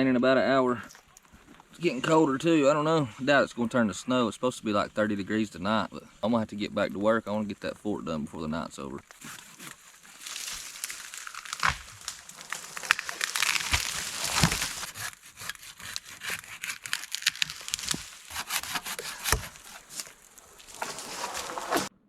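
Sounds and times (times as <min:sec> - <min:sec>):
wood and brush rustling: 0:00.8 - 0:02.1, 0:09.0 - 0:21.9.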